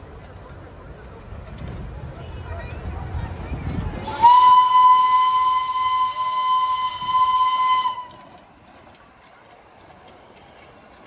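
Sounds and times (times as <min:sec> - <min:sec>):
train whistle high note: 0:04.1 - 0:08.3.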